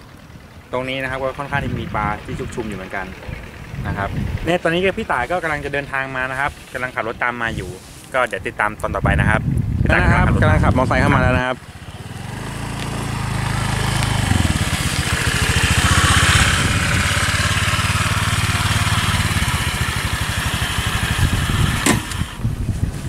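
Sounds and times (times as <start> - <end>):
motorcycle engine running: 0.0 - 7.9, 9.8 - 23.0
sharp click: 21.8 - 22.3.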